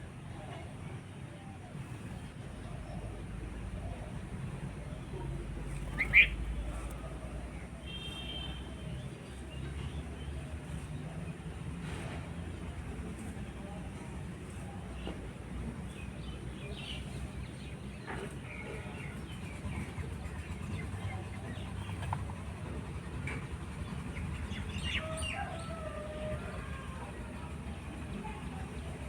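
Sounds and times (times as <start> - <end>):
birds chirping: 2.0 - 10.4.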